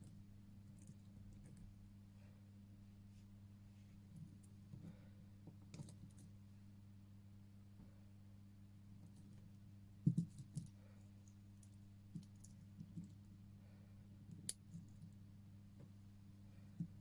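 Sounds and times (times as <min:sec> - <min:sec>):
low electrical hum: 0:00.0 - 0:17.0
small clicks and taps: 0:10.0 - 0:13.3.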